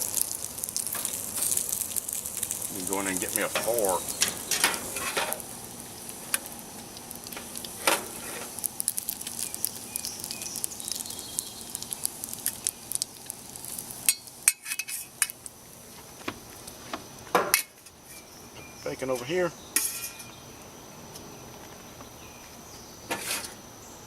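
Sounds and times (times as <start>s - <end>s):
bacon sizzling in a pan: 0.0s - 16.7s.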